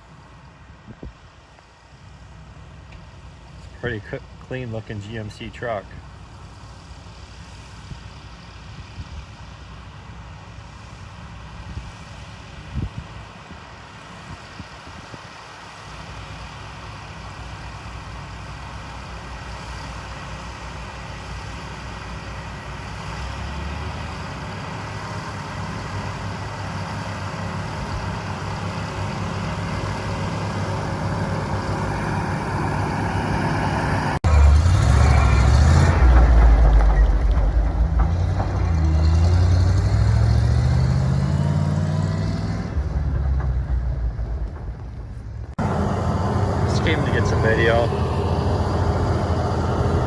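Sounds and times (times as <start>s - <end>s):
heavy vehicle engine running: 16.0s - 50.0s.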